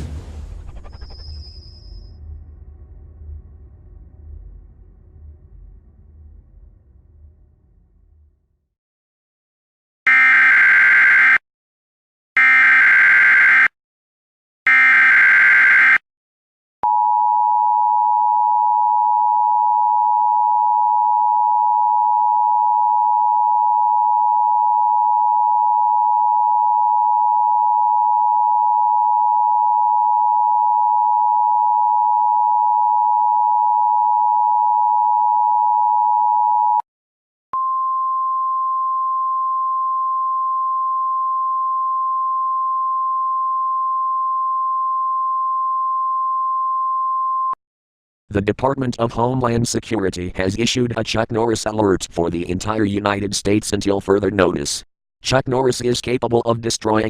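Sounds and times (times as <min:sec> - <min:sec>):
steady higher tone: 0:00.7 - 0:08.5.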